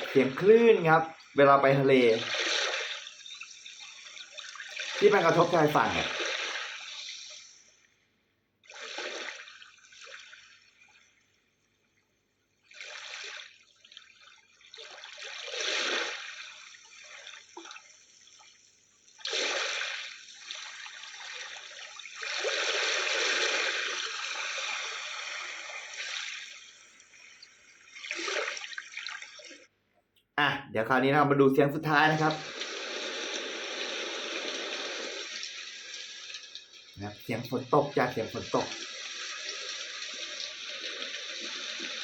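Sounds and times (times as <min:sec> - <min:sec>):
ocean waves washing onto shore: 0:00.0 - 0:07.7, 0:19.2 - 0:27.4, 0:31.8 - 0:42.0.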